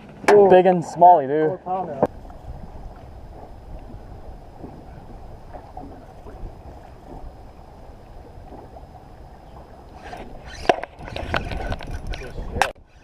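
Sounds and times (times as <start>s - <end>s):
wind rumble on microphone: 2.1s - 13.0s.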